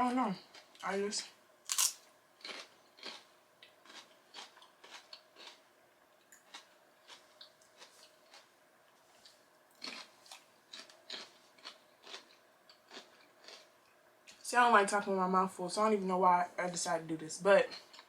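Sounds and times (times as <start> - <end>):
person chewing crispy food: 0.5 - 0.8, 1.7 - 5.6, 6.2 - 14.4, 17.7 - 18.0.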